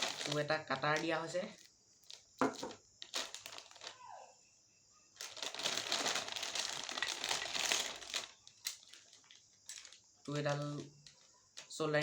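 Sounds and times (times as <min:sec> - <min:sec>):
plastic packaging crinkling: 0:00.0 - 0:04.0, 0:05.2 - 0:12.0.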